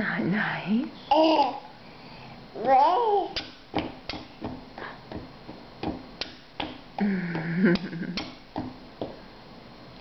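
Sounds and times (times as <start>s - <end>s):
sharp taps and clicks: 3.4s - 6.8s.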